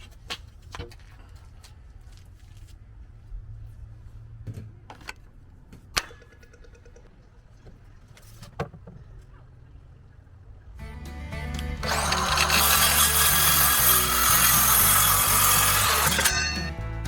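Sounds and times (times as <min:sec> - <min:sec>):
low steady rumble: 0:01.0 - 0:11.9.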